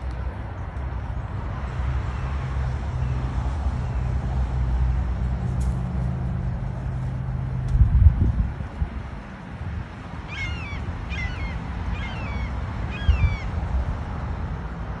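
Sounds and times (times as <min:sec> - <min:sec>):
steady low rumble: 0:04.9 - 0:10.0.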